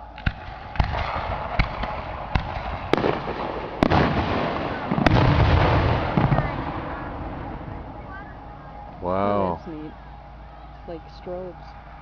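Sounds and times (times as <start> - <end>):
fireworks crackling: 0.0 - 12.0
firework shells bursting: 0.2 - 7.6.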